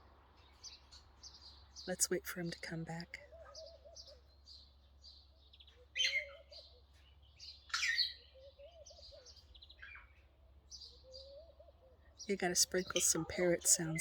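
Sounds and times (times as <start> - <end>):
small birds chirping: 0.0 - 14.0
doves cooing: 3.0 - 4.6, 5.4 - 7.1, 7.8 - 14.0.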